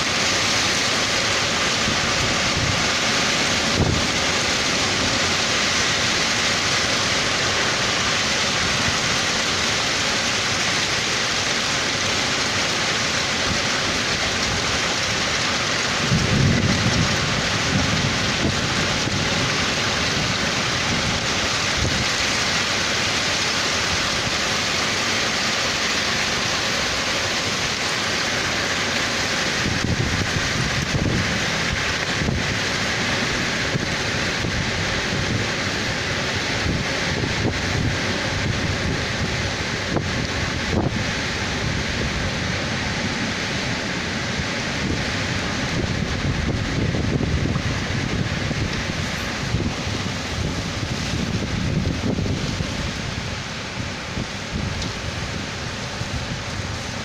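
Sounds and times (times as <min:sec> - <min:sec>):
heavy rain downpour: 0:00.0 - 0:57.0
low thunder rumble: 0:13.5 - 0:23.0, 0:29.1 - 0:57.0.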